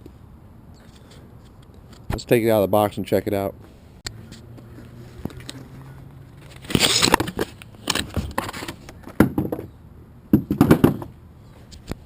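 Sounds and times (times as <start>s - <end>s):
cardboard box packaging rustling: 5.4s - 8.9s.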